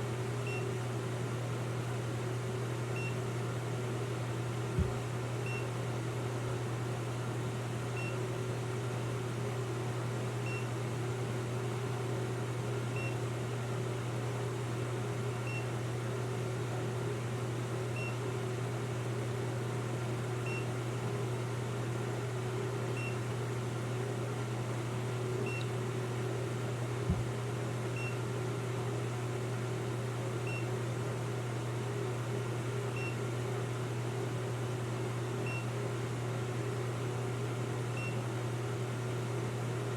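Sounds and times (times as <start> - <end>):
steady low hum: 4.6 - 5.6.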